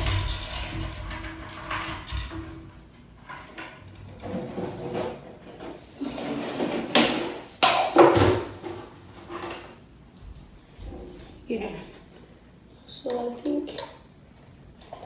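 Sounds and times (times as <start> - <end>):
sharp clattering knocks: 0.0 - 3.8
objects rustling and rattling: 0.0 - 11.6.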